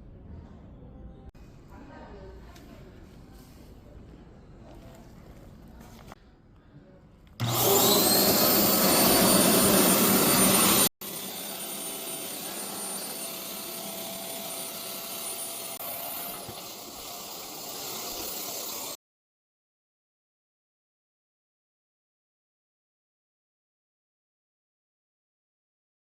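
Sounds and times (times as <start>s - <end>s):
electric air pump running: 7.4s - 19.0s.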